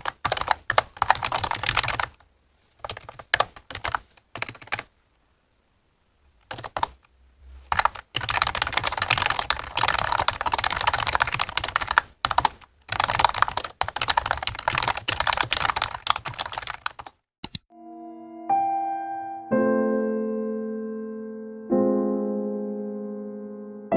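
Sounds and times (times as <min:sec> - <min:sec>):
typing on keyboard: 0:00.0 - 0:02.2, 0:02.8 - 0:04.9, 0:06.4 - 0:07.0, 0:07.7 - 0:17.7.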